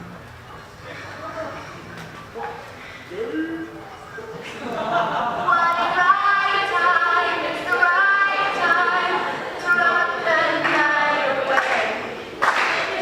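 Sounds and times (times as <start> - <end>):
voices singing together: 4.5 - 13.0.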